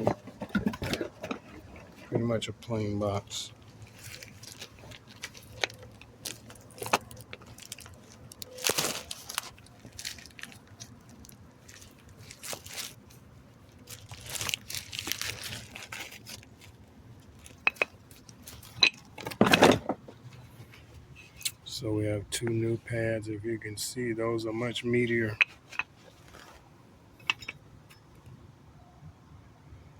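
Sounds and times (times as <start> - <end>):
brake pads clicking and clinking: 0.0 - 21.6, 27.2 - 28.3
packaging tearing and rustling: 3.1 - 18.8.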